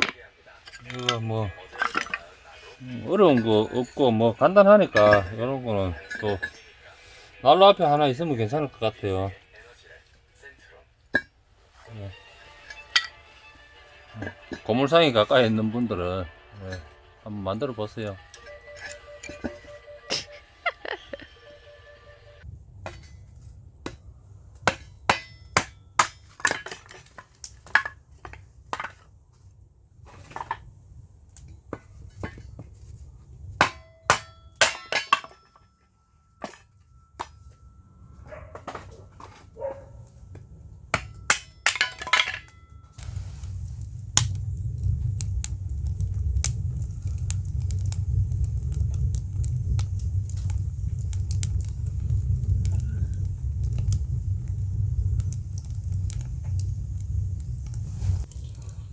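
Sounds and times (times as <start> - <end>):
steady low rumble: 42.5 - 58.9.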